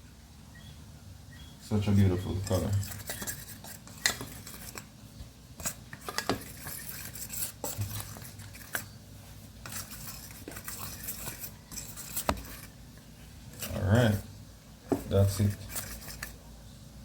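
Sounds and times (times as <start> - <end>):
fork stirring in a bowl: 1.8 - 5.0, 5.6 - 12.8, 13.4 - 14.3, 14.9 - 16.4.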